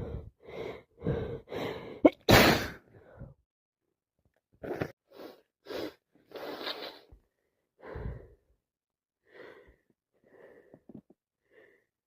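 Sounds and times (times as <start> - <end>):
heavy breathy breaths: 0.0 - 2.0, 7.8 - 8.5.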